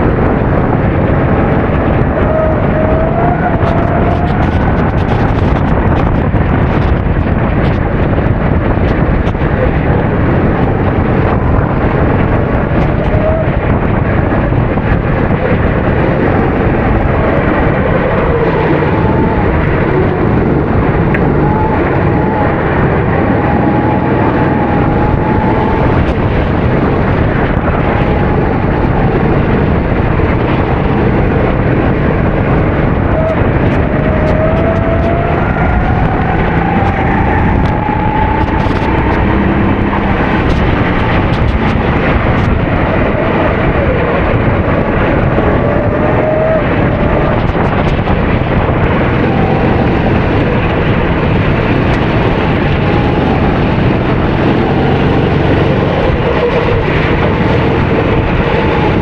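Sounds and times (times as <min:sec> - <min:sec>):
dense rushing noise: 0:00.0 - 0:59.0
kart engine accelerating: 0:00.0 - 0:59.0.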